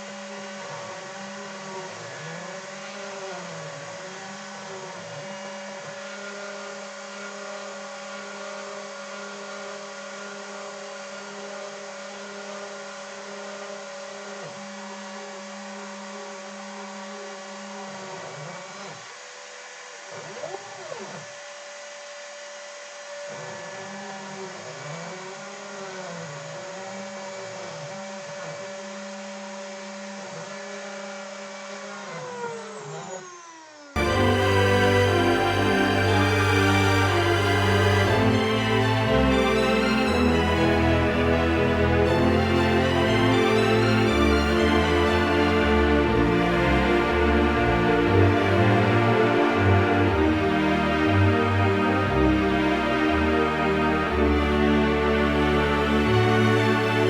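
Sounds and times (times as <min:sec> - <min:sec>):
music: 0:34.0 - 0:57.0.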